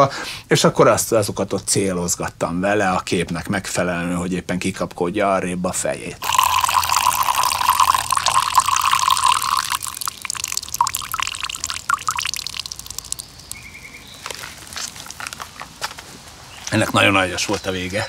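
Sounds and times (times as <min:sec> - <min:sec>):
water jet splashing: 0:06.2 - 0:13.6
water dribbling and dripping: 0:06.2 - 0:15.2.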